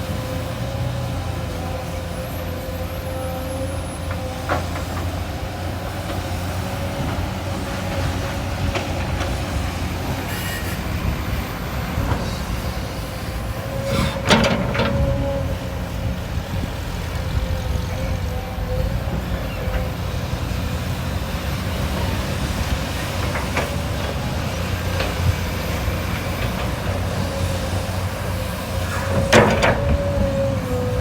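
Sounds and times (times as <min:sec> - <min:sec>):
excavator diesel engine: 0:00.0 - 0:31.0.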